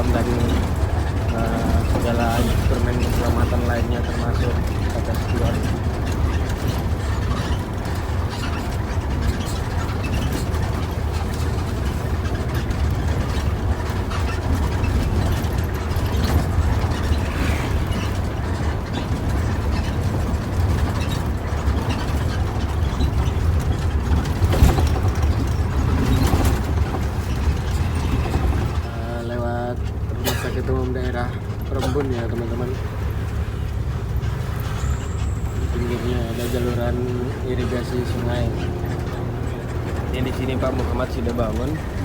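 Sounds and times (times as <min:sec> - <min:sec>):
cabin clicks and rattles: 0:00.0 - 0:28.9
bus engine and road drone: 0:00.0 - 0:42.0.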